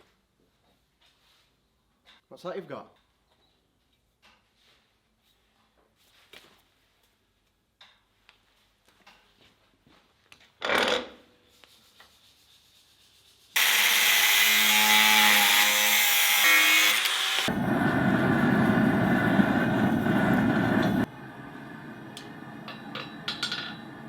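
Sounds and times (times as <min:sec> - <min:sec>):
power tool grinding steel: 0:13.6 - 0:21.1.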